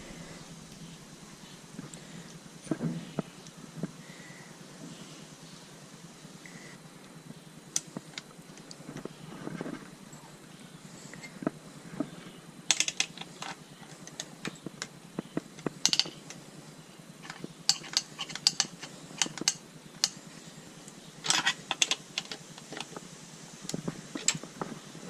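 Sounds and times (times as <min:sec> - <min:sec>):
tools rattling: 0:12.7 - 0:14.6, 0:15.8 - 0:16.4, 0:17.2 - 0:20.2, 0:21.2 - 0:23.0
sharp metallic clicks: 0:17.2 - 0:20.2.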